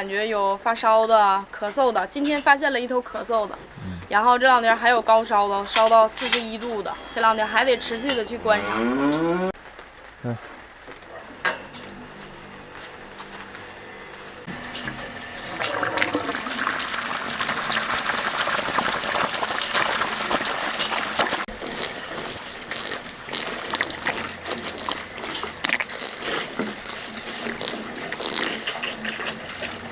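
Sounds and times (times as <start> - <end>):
water pouring: 14.6 - 29.9
irregular water splashing: 15.4 - 29.9.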